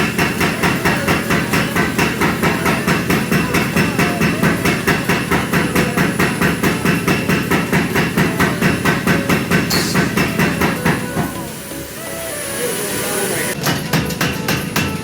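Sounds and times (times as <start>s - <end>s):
hammer forging metal: 0.0s - 11.8s, 13.5s - 15.0s.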